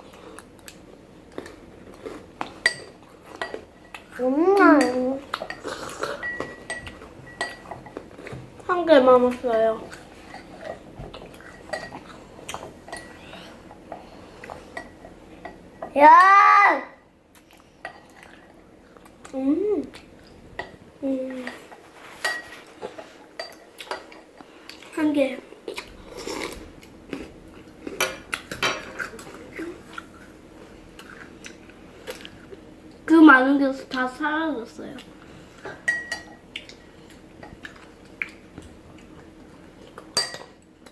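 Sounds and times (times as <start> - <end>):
cutlery clinking against dish: 4.7 - 8.0, 21.4 - 22.7, 35.7 - 37.6, 40.1 - 40.9
tableware clinking on table: 22.2 - 22.6, 35.8 - 36.4, 40.2 - 40.6.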